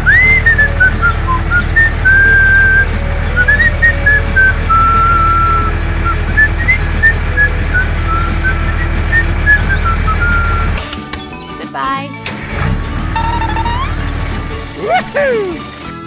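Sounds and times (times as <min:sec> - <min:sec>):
steady low drone: 0:00.0 - 0:10.8
whistled tune: 0:00.0 - 0:11.6, 0:12.8 - 0:16.0.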